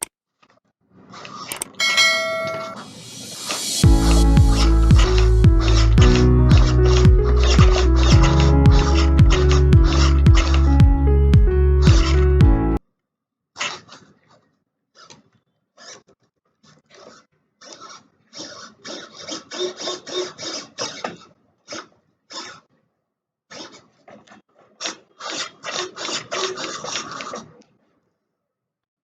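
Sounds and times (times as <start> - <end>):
short scraping strokes: 2.7 - 10.8.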